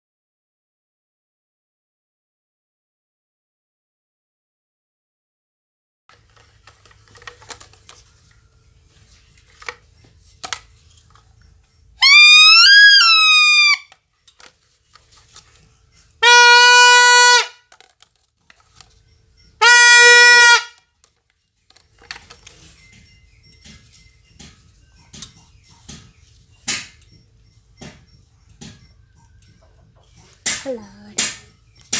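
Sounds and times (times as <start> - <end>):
loud horn blasts: 16.2 - 17.6, 19.6 - 20.9.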